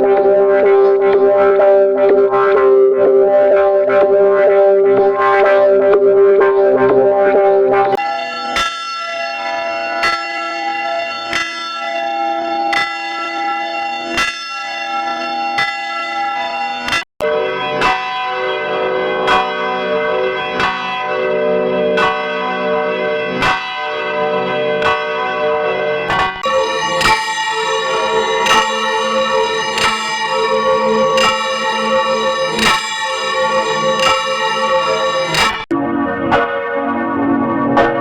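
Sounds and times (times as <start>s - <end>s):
church bell tolling: 26.4s - 35.7s
lower bell ringing: 26.4s - 35.7s.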